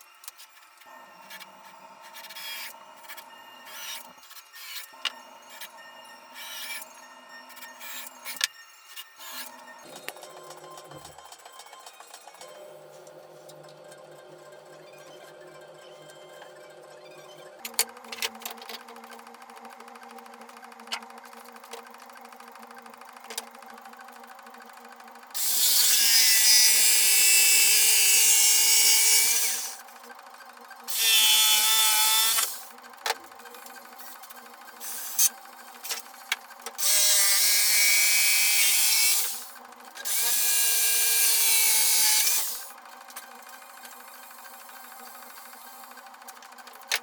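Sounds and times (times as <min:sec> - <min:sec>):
power drill whining: 0:25.4 - 0:29.9, 0:30.9 - 0:32.7, 0:36.8 - 0:42.7.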